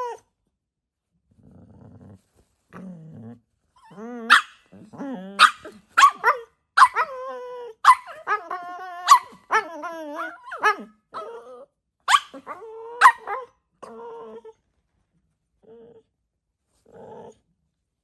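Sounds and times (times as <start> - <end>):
dog whining: 0.0 - 0.3, 3.8 - 14.6
dog barking: 4.3 - 4.6, 5.4 - 7.1, 7.8 - 8.4, 9.0 - 11.3, 12.1 - 13.5.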